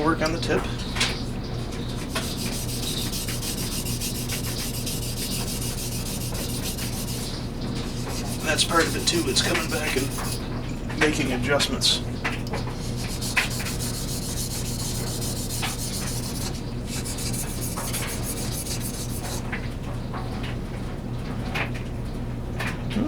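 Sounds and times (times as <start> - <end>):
knife scraping on whetstone: 2.0 - 10.4, 12.8 - 19.5.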